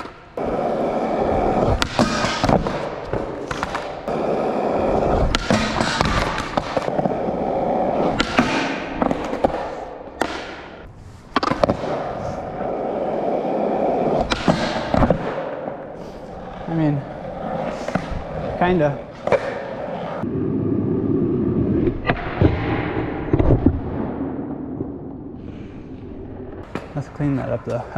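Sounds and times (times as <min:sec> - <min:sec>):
skateboard clacks and impacts: 0:00.0 - 0:16.5, 0:21.8 - 0:25.1
skateboard wheels rolling on concrete: 0:00.0 - 0:27.9.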